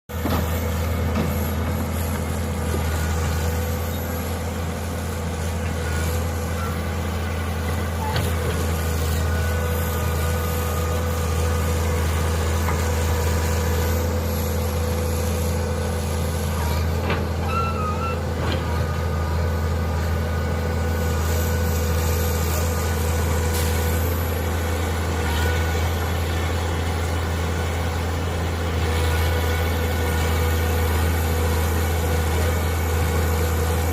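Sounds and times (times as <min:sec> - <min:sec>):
excavator engine running: 0:00.1 - 0:33.9.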